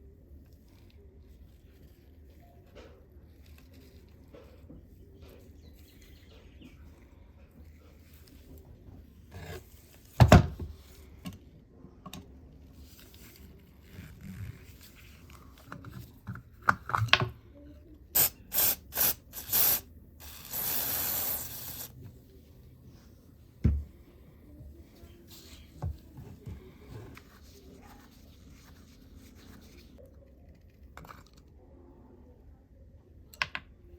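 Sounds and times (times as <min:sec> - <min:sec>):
spray hissing bursts: 0:18.2 - 0:21.9.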